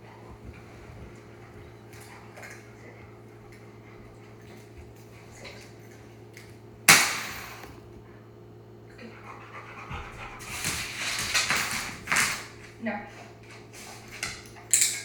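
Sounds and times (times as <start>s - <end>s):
keys clattering on hard floor: 10.5s - 12.7s, 14.7s - 15.0s.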